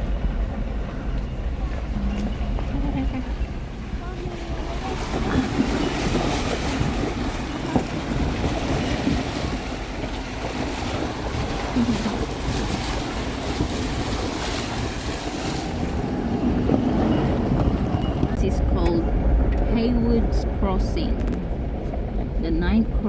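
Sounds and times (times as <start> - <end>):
vehicle low rumble: 0.0 - 23.0
water rushing and splashing: 3.2 - 20.6.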